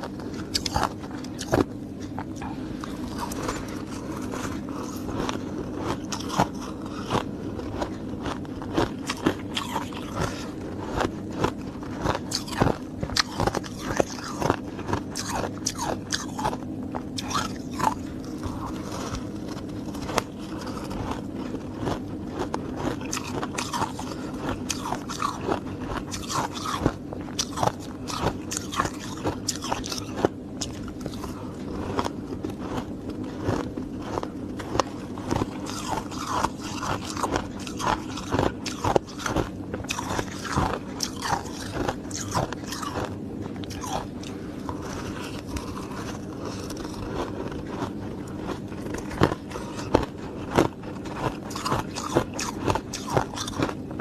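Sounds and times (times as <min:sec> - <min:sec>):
chewing hard ice: 0:00.0 - 0:54.0
steady low hum: 0:00.0 - 0:54.0.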